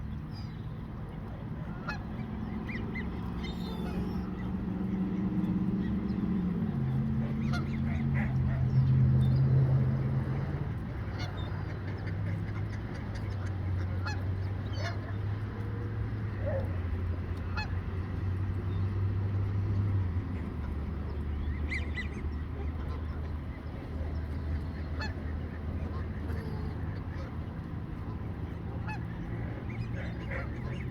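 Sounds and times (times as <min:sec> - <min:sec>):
geese honking: 0:01.7 - 0:05.4, 0:17.4 - 0:17.8, 0:20.4 - 0:30.9.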